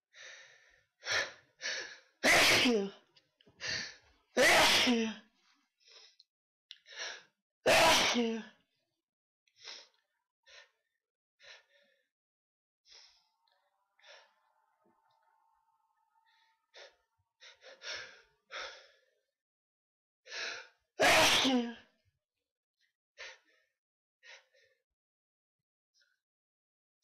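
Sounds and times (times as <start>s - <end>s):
person sneezing: 2.2s - 3.0s, 4.4s - 5.2s, 7.7s - 8.4s, 21.0s - 21.8s.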